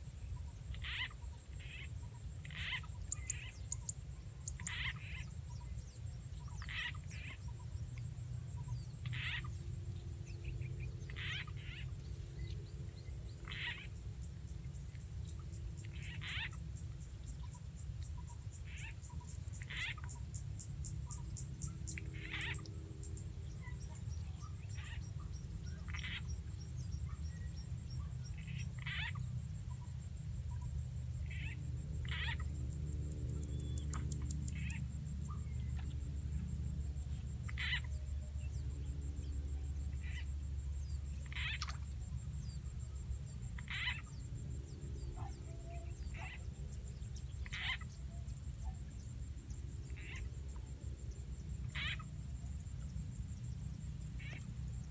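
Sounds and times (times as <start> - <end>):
frog croaks: 0.2 - 7.4, 8.5 - 10.1, 11.0 - 12.0, 13.3 - 20.2, 21.1 - 44.4, 45.2 - 54.6.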